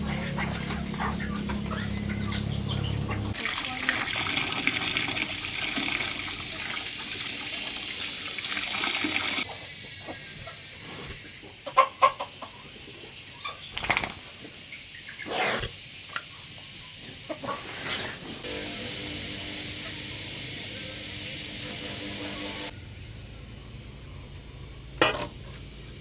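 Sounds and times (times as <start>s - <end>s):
chickens clucking: 0.0s - 3.4s, 9.4s - 15.5s, 16.1s - 18.4s
pouring hiss: 3.3s - 9.5s, 18.4s - 22.7s.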